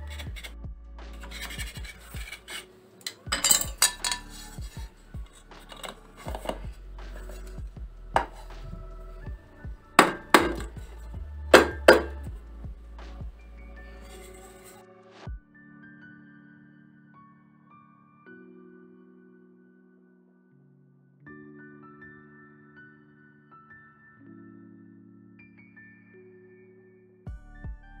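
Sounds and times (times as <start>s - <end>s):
soft background music: 0.0s - 28.0s
cake tin knocking and clinking: 3.1s - 4.8s, 10.0s - 10.8s, 11.5s - 12.2s.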